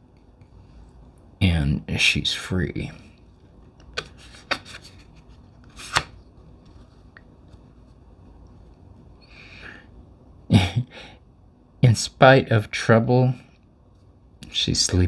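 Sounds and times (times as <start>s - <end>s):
cards tapping and sliding: 3.8s - 6.9s
soft card rustle: 3.8s - 8.0s.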